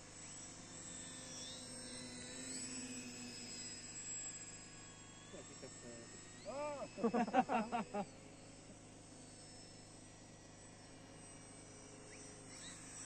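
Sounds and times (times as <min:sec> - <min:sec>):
faint electric motor whine: 0:00.0 - 0:13.0.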